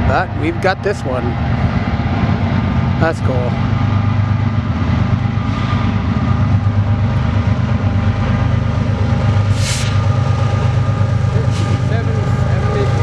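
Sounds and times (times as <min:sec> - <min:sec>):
freight train rumbling past: 0:00.0 - 0:13.0
brief hiss: 0:09.6 - 0:10.0.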